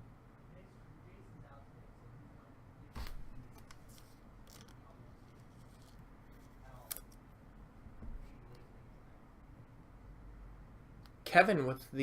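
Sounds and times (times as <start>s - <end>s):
card rustling: 3.0s - 7.0s.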